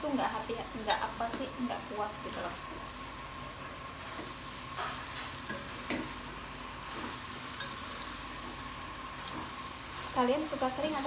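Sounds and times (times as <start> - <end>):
vegetables sizzling in oil: 0.0 - 11.0.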